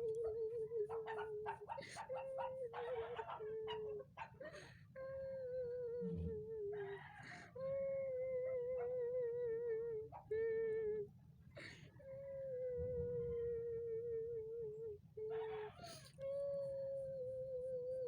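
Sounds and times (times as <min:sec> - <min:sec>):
breaths: 0:04.4 - 0:05.0.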